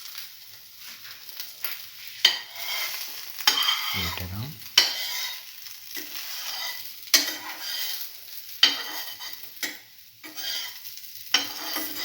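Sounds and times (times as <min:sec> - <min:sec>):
wet scraping and stirring: 0:02.0 - 0:04.2, 0:06.0 - 0:10.8, 0:11.4 - 0:12.0.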